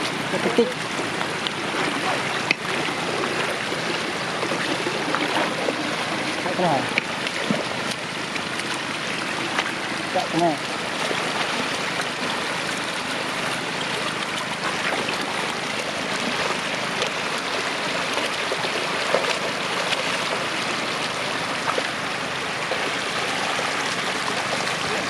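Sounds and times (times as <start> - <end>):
sharp splashes: 0.0 - 25.0
water rushing over road: 0.0 - 25.0.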